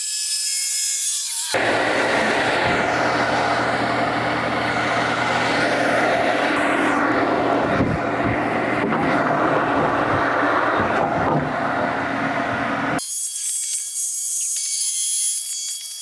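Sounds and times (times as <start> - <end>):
sawmill engine running: 1.5 - 13.0.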